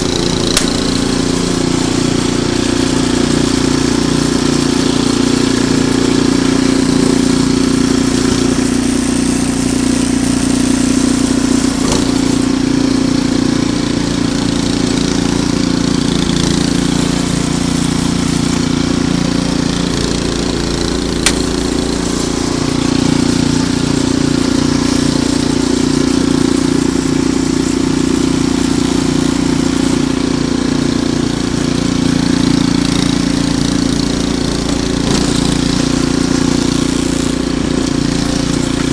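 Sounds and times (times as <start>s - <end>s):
snowblower engine running: 0.0s - 38.9s
sharp click: 0.5s - 0.8s, 21.2s - 21.5s.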